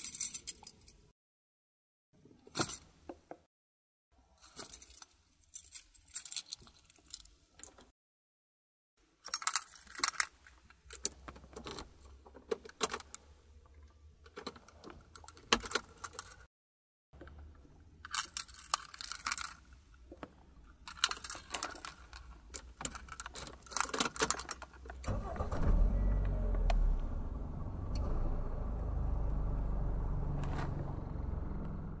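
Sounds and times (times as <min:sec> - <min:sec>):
car keys jangling: 0:20.9 - 0:25.4
car engine starting and running: 0:24.9 - 0:32.0.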